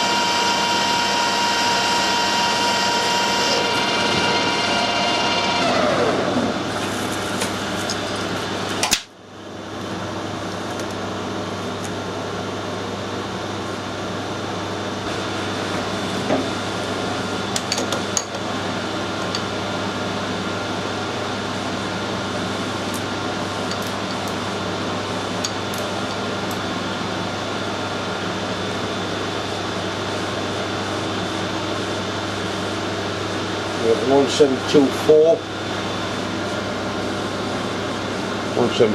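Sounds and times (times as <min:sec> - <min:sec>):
metal lathe motor hum: 0:00.0 - 0:08.6.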